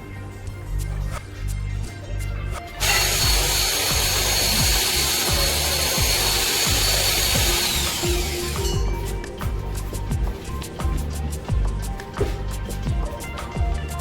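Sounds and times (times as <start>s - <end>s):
background music with steady beat: 0.0s - 14.0s
power tool whining: 2.8s - 9.3s.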